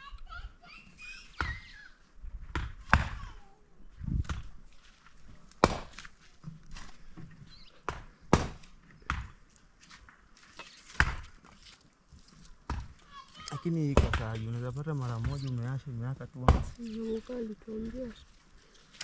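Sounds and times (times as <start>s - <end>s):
sharp knocks and thuds: 5.6s - 9.4s, 10.9s - 11.4s, 12.6s - 13.0s, 13.8s - 15.5s, 16.4s - 16.8s.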